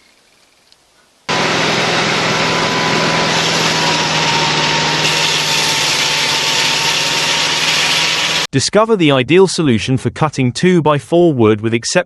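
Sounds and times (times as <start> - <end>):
small engine droning at high speed: 1.3 - 8.5.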